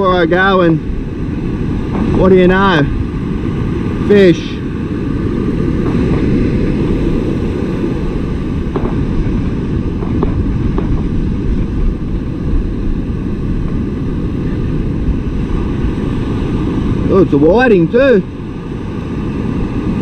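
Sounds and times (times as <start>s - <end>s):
surf washing: 0.0s - 20.0s
wind buffeting microphone: 0.0s - 20.0s.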